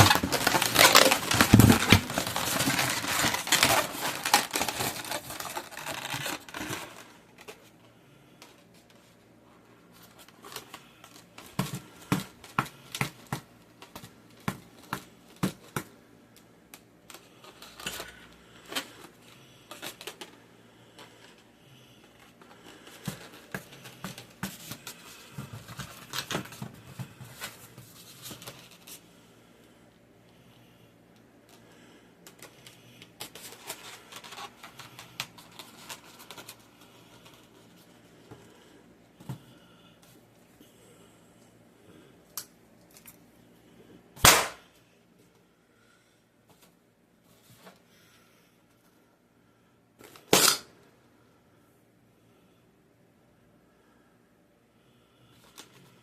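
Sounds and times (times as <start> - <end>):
balloon crinkling rustle: 0.0 - 16.0, 16.8 - 29.2, 32.3 - 38.7.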